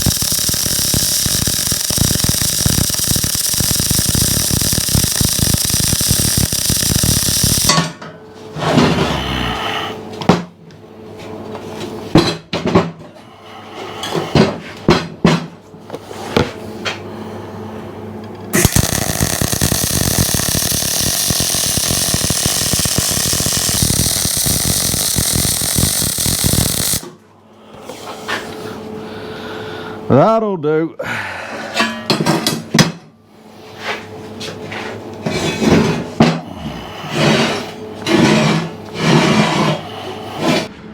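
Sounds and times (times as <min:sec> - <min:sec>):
welding arc crackling: 0:00.0 - 0:07.8, 0:18.5 - 0:27.1.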